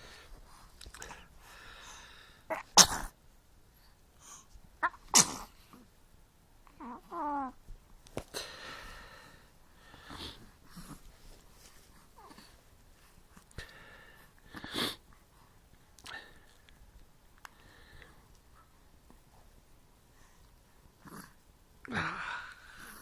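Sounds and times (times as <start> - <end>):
child sneezing: 2.5 - 3.2, 4.8 - 5.6.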